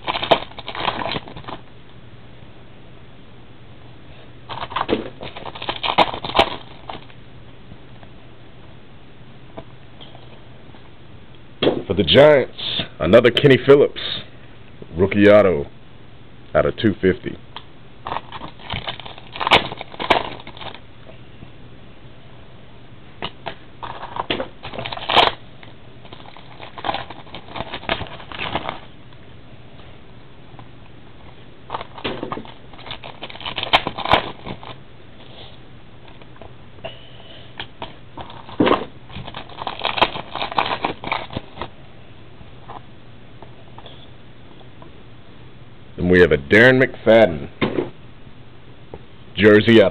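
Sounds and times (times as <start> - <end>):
cards rustling and tapping: 0.0 - 1.6, 4.5 - 7.1, 18.1 - 20.8, 23.2 - 25.4, 26.0 - 28.8, 31.7 - 34.8, 37.8 - 41.7
pack wrappers crinkling: 0.0 - 1.6, 4.5 - 7.2, 18.0 - 20.8, 23.8 - 25.4, 26.0 - 28.9, 31.7 - 34.8, 37.7 - 41.7.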